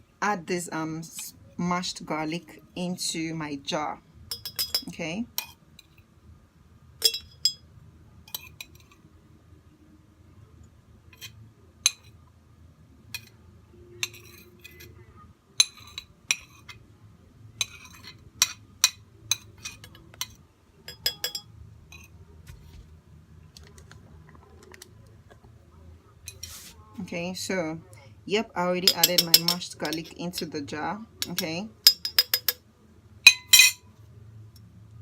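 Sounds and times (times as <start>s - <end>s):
utensil clinking against glass jar: 4.3s - 5.6s, 7.0s - 7.6s, 17.6s - 22.1s, 28.8s - 30.5s, 31.2s - 32.6s, 33.3s - 33.8s.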